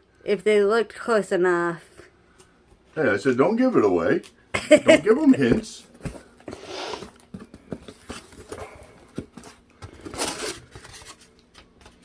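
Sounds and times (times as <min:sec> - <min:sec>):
cardboard box rustling and scraping: 0:05.4 - 0:11.3.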